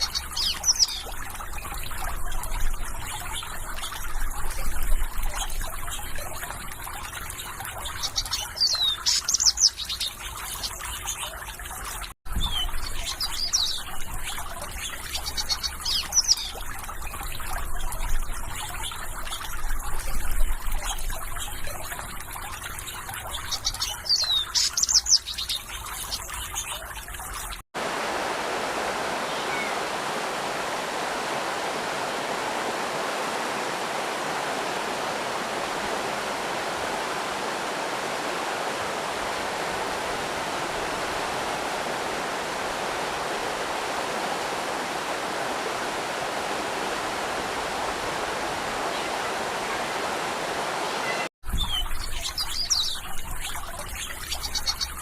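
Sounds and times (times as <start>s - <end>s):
stream water rushing: 0.0s - 5.6s, 27.8s - 51.3s
water trickling: 0.0s - 55.0s
high bird chirps: 29.3s - 29.8s.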